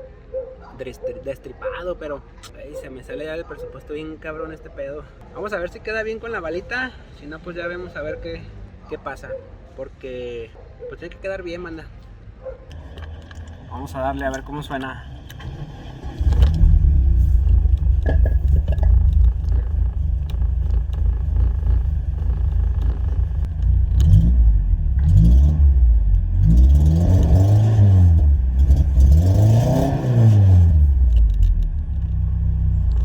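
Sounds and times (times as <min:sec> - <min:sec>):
car engine idling and revving: 0:12.0 - 0:33.0.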